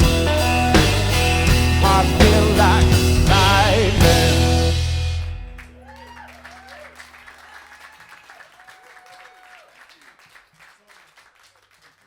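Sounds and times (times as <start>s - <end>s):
rock band chord: 0.0s - 5.8s
audience applauding and cheering: 5.4s - 12.0s.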